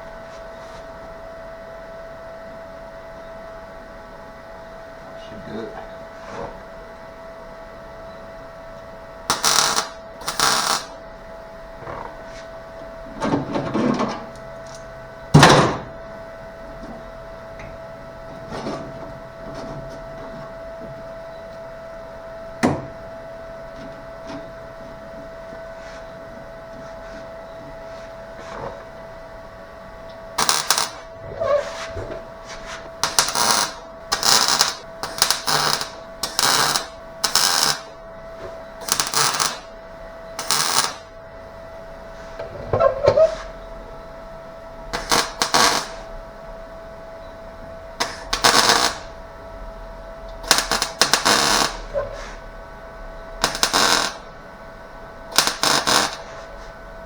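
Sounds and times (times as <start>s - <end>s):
electrical hum: 0.0s - 57.0s
welding crackle bursts: 9.3s - 11.0s, 30.4s - 31.6s, 33.0s - 37.9s, 38.8s - 39.7s, 40.4s - 41.1s, 45.0s - 46.1s, 48.0s - 49.1s, 50.4s - 51.9s, 53.4s - 54.3s, 55.3s - 56.4s.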